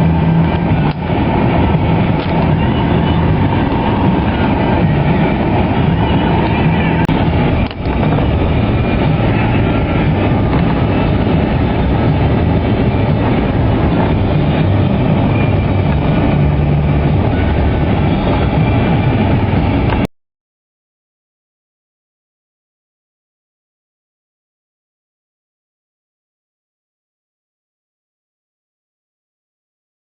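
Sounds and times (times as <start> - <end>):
loud steady rumbling with hum: 0.0 - 20.1.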